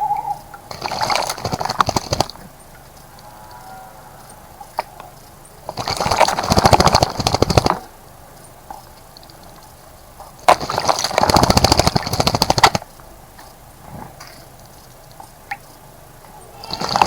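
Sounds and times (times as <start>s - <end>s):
bird splashing in water: 0.7s - 3.2s, 4.7s - 7.9s, 8.8s - 12.9s, 16.5s - 17.0s.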